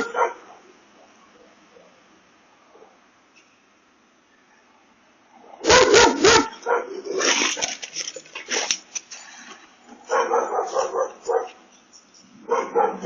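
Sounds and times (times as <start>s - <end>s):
dog barking: 0.0s - 2.0s, 5.4s - 7.3s, 10.0s - 11.6s, 12.4s - 13.0s.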